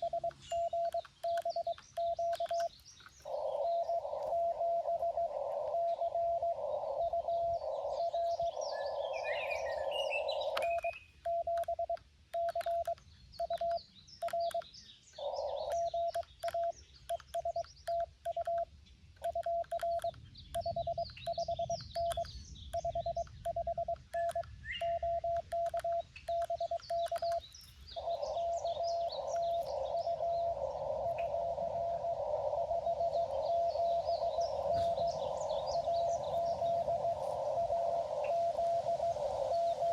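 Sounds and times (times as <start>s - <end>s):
morse code beeps: 0.0s - 2.7s, 10.4s - 14.7s, 15.7s - 27.4s
birds chirping: 0.0s - 39.9s
faint steady tone: 0.0s - 39.9s.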